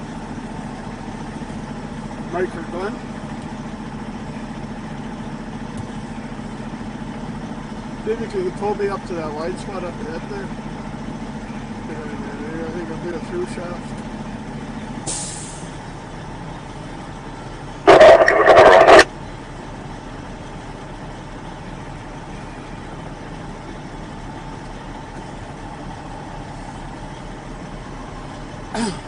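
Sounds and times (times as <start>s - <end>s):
truck diesel engine idling: 0.0s - 29.0s
air brakes releasing: 15.0s - 15.8s.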